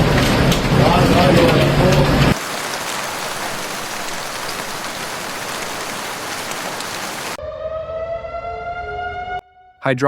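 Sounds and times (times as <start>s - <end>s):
heavy rain pouring: 0.0s - 7.4s
siren: 7.4s - 9.8s.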